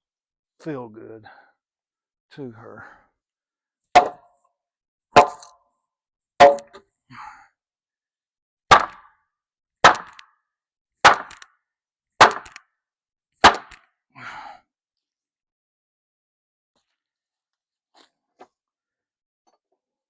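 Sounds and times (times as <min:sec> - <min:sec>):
hammer striking wood: 0:04.0 - 0:04.3, 0:05.2 - 0:05.6, 0:06.4 - 0:06.8, 0:08.7 - 0:09.2, 0:09.8 - 0:10.3, 0:11.0 - 0:11.6, 0:12.2 - 0:12.7, 0:13.4 - 0:13.9.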